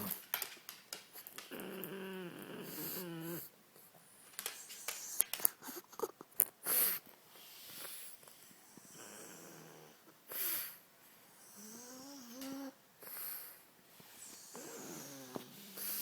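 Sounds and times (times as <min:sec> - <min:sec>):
dog snoring: 0:01.2 - 0:03.6, 0:04.7 - 0:10.8, 0:11.4 - 0:13.6, 0:14.2 - 0:16.0
loud hissing breaths: 0:10.3 - 0:10.9, 0:13.0 - 0:16.0.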